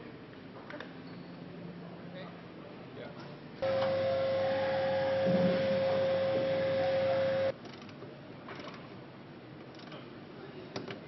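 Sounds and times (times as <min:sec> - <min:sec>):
machine whine: 0:03.6 - 0:07.5.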